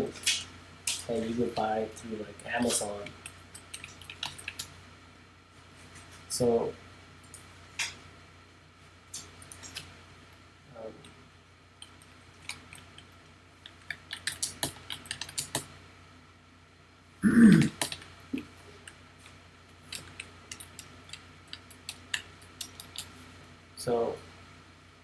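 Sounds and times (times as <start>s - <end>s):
low throaty vocal sound: 17.2s - 17.8s.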